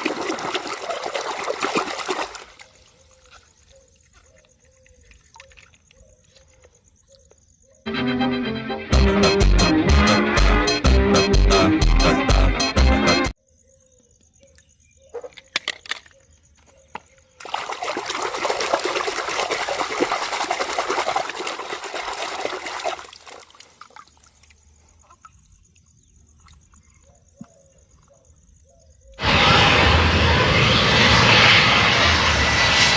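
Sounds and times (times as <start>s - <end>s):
water running: 17.4s - 24.0s.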